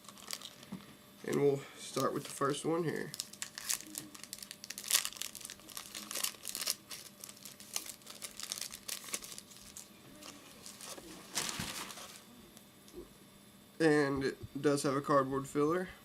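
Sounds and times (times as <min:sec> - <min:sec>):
wrapper tearing and crinkling: 0:00.0 - 0:00.7, 0:02.0 - 0:12.2.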